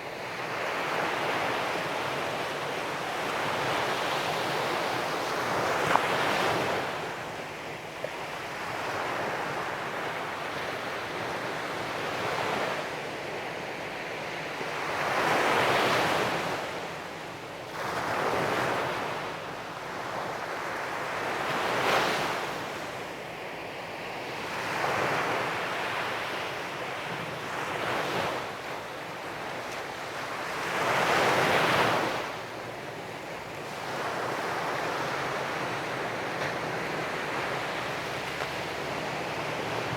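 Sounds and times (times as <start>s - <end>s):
sea waves breaking on beach: 24.4s - 39.9s.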